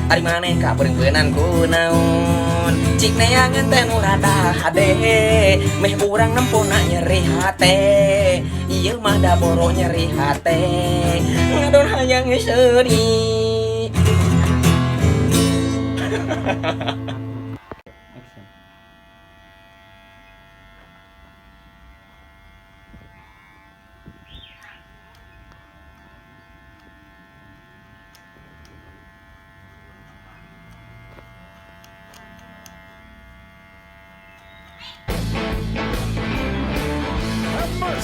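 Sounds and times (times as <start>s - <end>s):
music: 0.0s - 17.6s, 35.1s - 38.0s
electric hair clipper buzzing: 0.0s - 38.0s.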